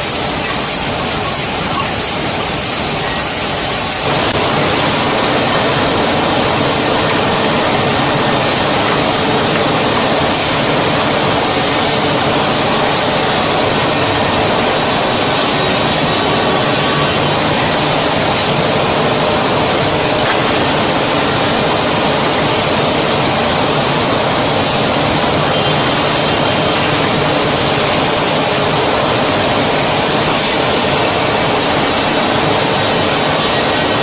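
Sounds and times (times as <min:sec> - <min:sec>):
woodworking machinery running: 0:00.0 - 0:34.0.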